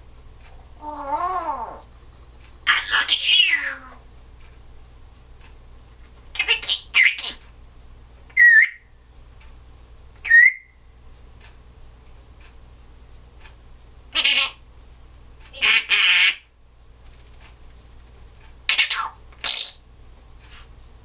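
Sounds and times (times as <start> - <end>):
parrot harsh calls: 0.8 - 1.8, 2.6 - 4.0, 6.3 - 7.4, 8.4 - 8.9, 10.2 - 10.7, 14.1 - 14.6, 15.5 - 16.4, 18.7 - 19.8
parrot whistles: 8.4 - 8.9, 10.2 - 10.8.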